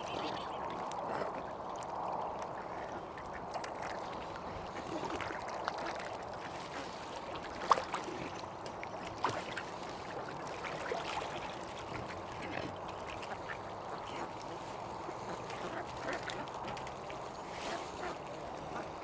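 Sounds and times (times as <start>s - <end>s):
ducks quacking: 15.0s - 16.6s.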